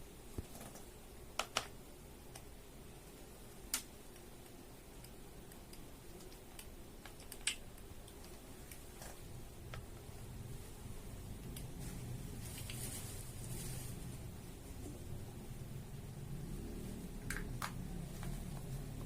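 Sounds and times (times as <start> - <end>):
small sharp clicks and taps: 0.3 - 2.5, 3.5 - 8.9.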